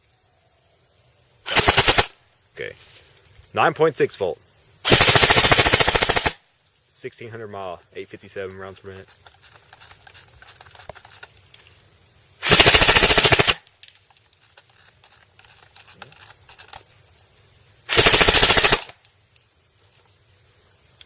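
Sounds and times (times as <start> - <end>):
airsoft gun full-auto bursts: 1.5 - 2.2, 4.8 - 6.4, 12.4 - 13.6, 17.9 - 19.0.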